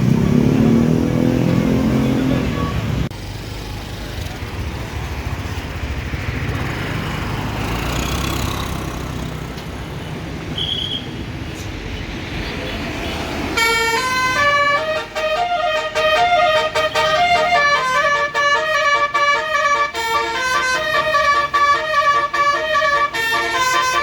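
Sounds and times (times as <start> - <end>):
diesel bus engine accelerating: 0.0 - 10.4
low rumble of road traffic: 0.0 - 24.0.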